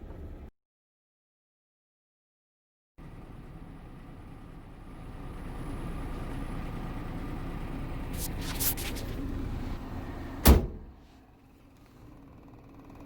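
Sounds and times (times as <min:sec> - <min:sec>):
vehicle low rumble: 0:00.0 - 0:00.5, 0:03.0 - 0:13.0
car door shutting: 0:08.2 - 0:11.0.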